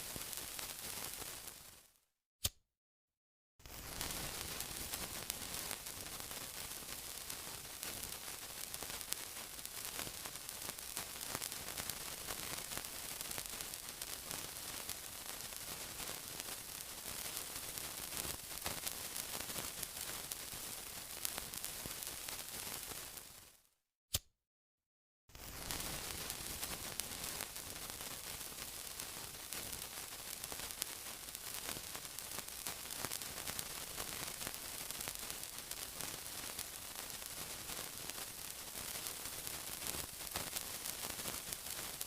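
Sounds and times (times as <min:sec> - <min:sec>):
sizzling with crackles: 0:00.0 - 0:02.0, 0:03.6 - 0:23.7, 0:25.3 - 0:42.0.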